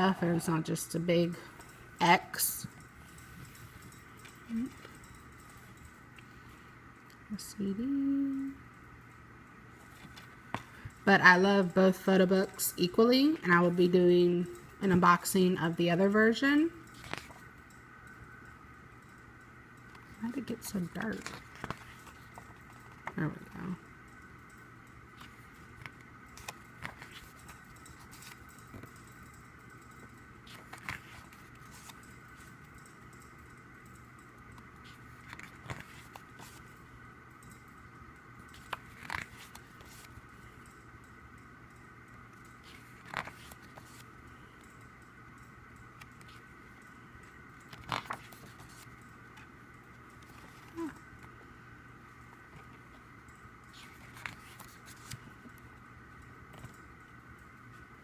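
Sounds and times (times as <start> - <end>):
faint steady hum: 0.0 - 58.0
paper rustling: 20.8 - 23.6, 25.2 - 28.9, 30.5 - 32.5, 34.8 - 36.7, 38.5 - 40.2, 42.6 - 44.1, 47.7 - 49.5, 53.7 - 55.6.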